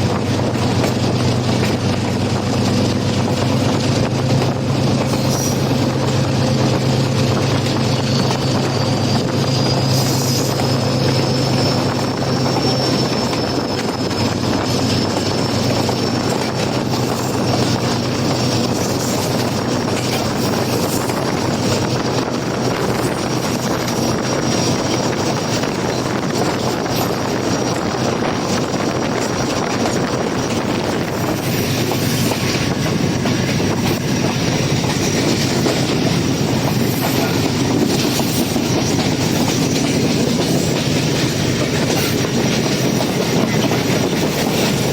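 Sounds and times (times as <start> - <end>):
train wheels clattering on rails: 0.0 - 44.9.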